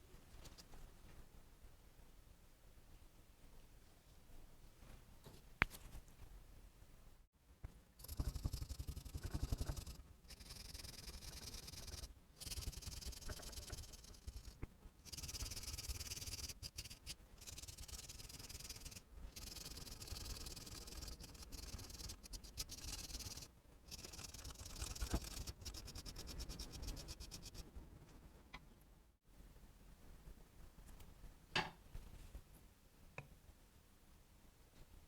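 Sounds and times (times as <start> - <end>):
brush scrubbing screw heads: 8.0 - 27.6.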